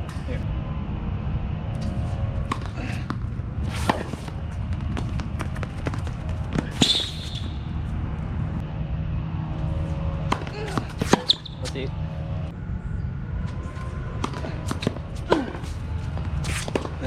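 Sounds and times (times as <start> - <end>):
low rumble: 0.0 - 17.0
tennis balls hitting court and rackets: 2.4 - 8.6, 9.8 - 12.4, 14.2 - 17.0
shoe squeak: 6.6 - 7.7, 11.0 - 11.8.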